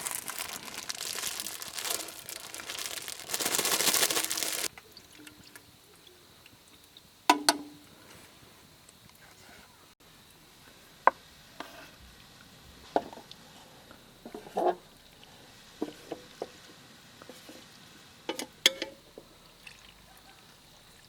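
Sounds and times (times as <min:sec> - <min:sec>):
cookware and utensils clinking: 0:18.3 - 0:19.0.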